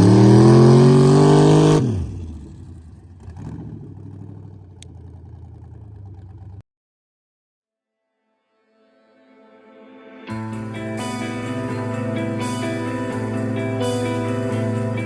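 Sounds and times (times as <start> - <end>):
truck engine accelerating hard: 0.0 - 6.6.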